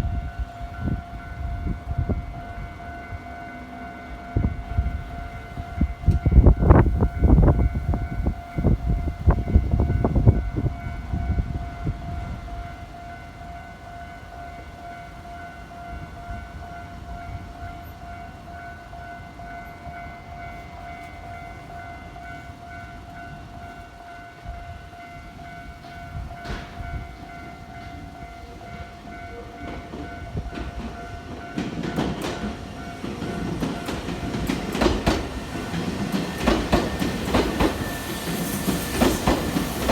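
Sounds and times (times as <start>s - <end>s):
train wheels clattering over rail joints: 25.8s - 28.0s, 29.6s - 39.9s.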